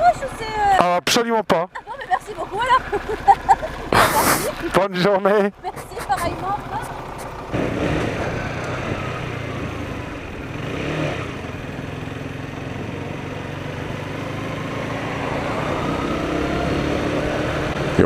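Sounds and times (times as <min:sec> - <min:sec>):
motorcycle engine running: 0:05.5 - 0:18.0.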